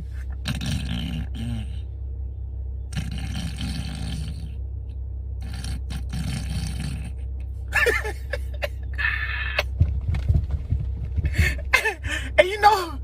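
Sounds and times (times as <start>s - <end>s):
grunting vocal noises: 0.0s - 1.8s, 2.9s - 4.6s, 5.4s - 7.2s
low hum: 0.0s - 13.0s
person snoring: 0.4s - 1.8s, 2.9s - 4.5s.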